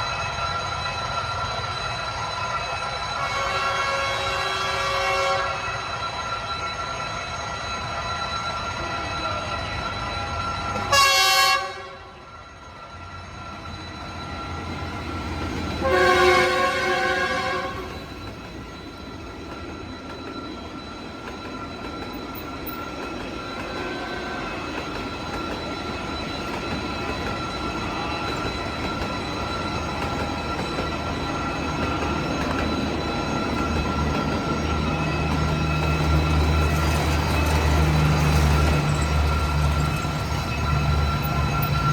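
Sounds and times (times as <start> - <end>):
train rumble and rail noise: 0.0 - 41.9
diesel locomotive horn: 3.2 - 5.8, 10.9 - 12.2, 15.8 - 18.1, 23.8 - 24.6.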